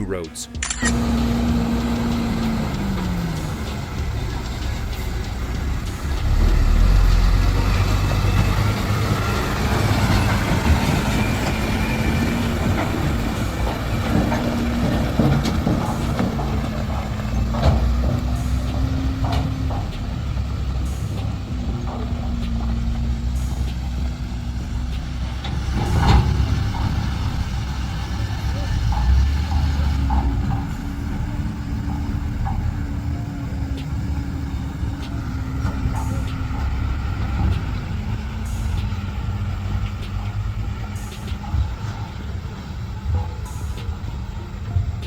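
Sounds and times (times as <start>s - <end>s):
heavy diesel machinery rumbling: 0.0s - 45.0s
sharp knocks and clanks: 0.1s - 45.0s.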